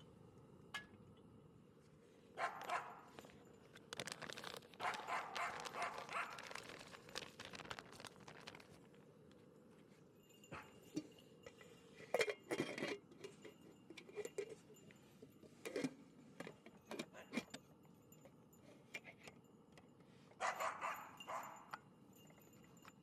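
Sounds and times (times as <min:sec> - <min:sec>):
small hard objects clinking and rattling: 0:02.6 - 0:09.1.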